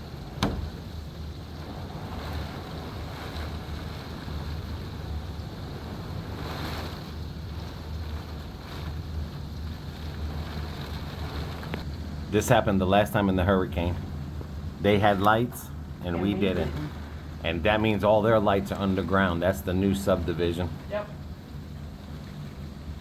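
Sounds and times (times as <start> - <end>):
wind buffeting microphone: 0.0 - 13.0
sharp knock: 0.4 - 0.8.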